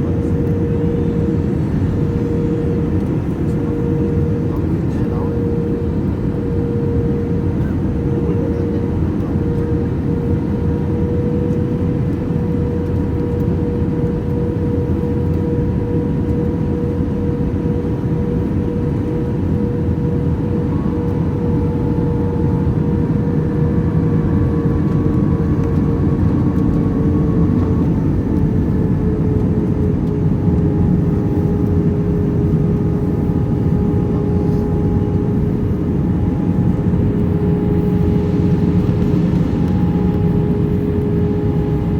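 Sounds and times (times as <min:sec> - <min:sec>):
airplane engine rushing: 0:00.0 - 0:41.9
airplane engine whine: 0:00.0 - 0:41.9.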